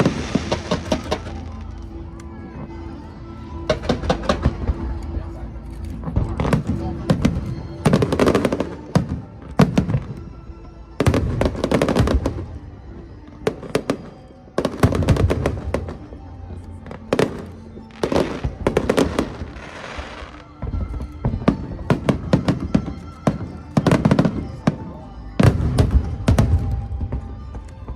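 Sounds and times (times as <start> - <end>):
fireworks bangs and crackles: 0.0 - 1.9, 3.7 - 5.0, 6.0 - 10.2, 11.0 - 16.2, 16.8 - 27.9
hissing crackle: 0.0 - 1.9
background music: 0.0 - 27.9.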